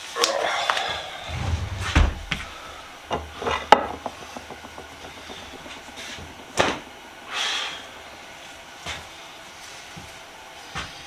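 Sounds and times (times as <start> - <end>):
faint rubbing: 1.2 - 3.1.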